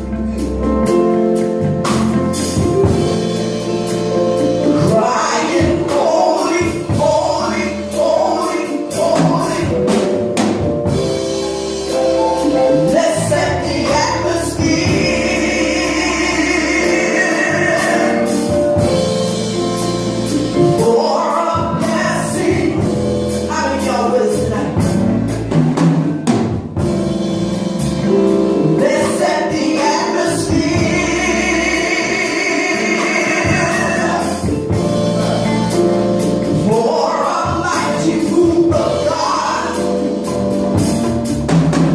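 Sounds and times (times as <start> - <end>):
drum kit: 0.0 - 41.9
singers: 12.9 - 18.7, 28.8 - 34.7, 36.5 - 40.0.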